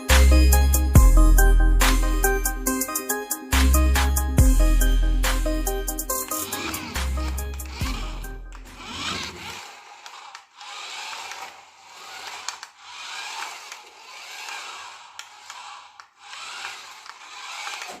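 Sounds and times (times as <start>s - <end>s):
toy car motor whirring: 4.8s - 18.0s
clicks: 5.6s - 18.0s.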